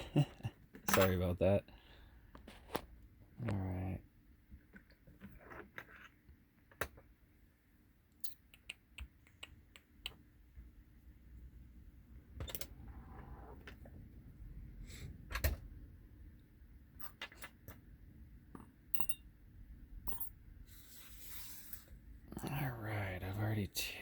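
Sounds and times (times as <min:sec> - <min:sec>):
small metal clicks and clinks: 0:18.9 - 0:19.2.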